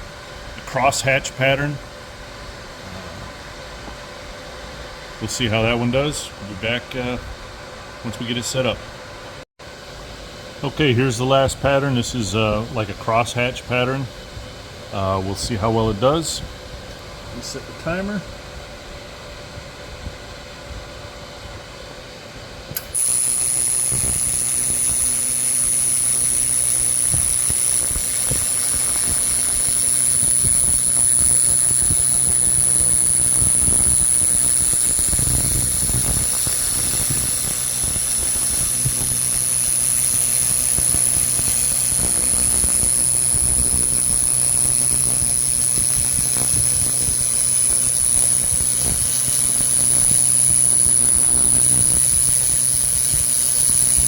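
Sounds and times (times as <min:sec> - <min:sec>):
laser cleaner high-pitched whine: 0:02.8 - 0:07.2, 0:22.7 - 0:54.0.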